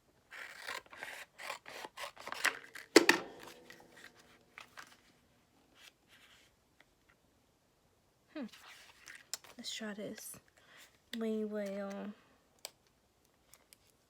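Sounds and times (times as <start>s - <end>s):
scissors snipping plastic film: 0.3s - 4.9s.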